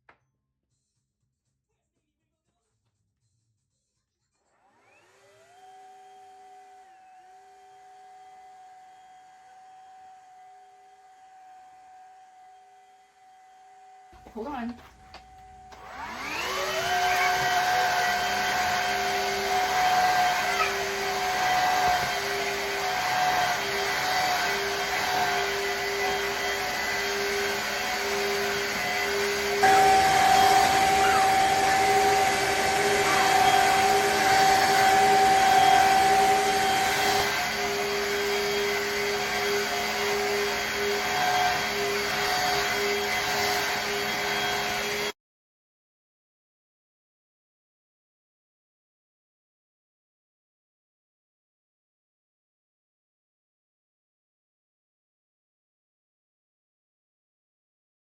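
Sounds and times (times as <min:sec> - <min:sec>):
vacuum mop droning hum: 0:04.6 - 0:45.1.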